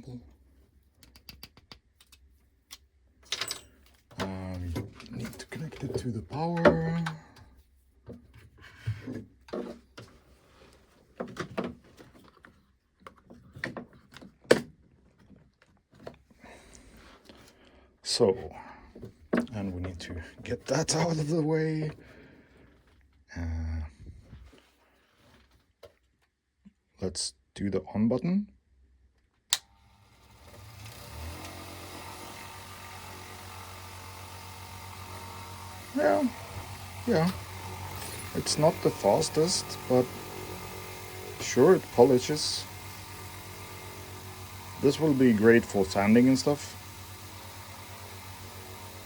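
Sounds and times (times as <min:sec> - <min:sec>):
bench grinder motor humming: 0:29.7 - 0:49.0.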